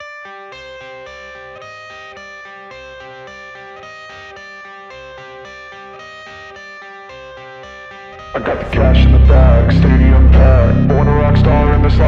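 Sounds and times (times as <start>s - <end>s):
plucked electric guitar pattern: 0.3s - 12.0s
steady low beat: 8.3s - 12.0s.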